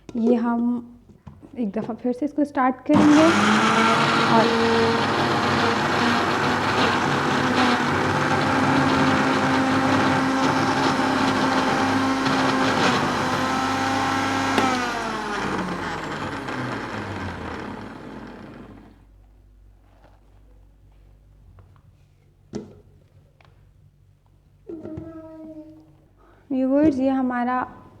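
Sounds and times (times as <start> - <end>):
electric blender motor running: 2.9 - 19.1.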